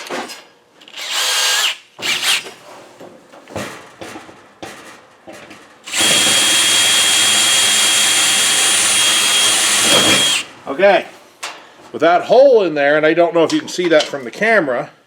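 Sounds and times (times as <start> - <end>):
electric drill boring into metal: 1.0 - 2.4, 5.9 - 10.5.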